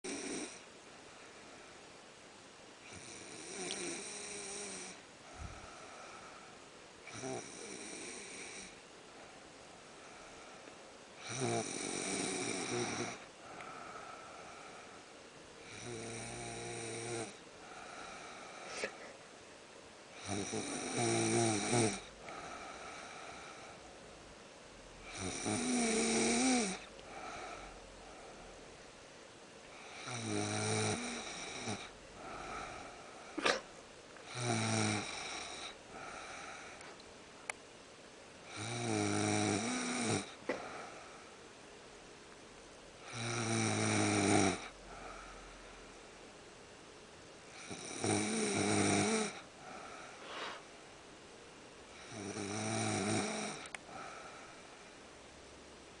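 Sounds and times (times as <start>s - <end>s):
rasping snores: 0.0s - 0.6s, 2.9s - 5.0s, 7.1s - 8.8s, 11.2s - 13.7s, 15.6s - 19.0s, 20.2s - 23.6s, 25.0s - 27.6s, 29.8s - 33.6s, 34.3s - 36.8s, 38.5s - 40.6s, 43.0s - 45.3s, 47.5s - 50.6s, 52.0s - 54.2s
faint airy breathing: 0.5s - 2.1s, 2.8s - 30.2s, 30.9s - 37.6s, 39.6s - 43.4s, 44.6s - 47.9s, 49.3s - 52.3s, 53.2s - 56.0s.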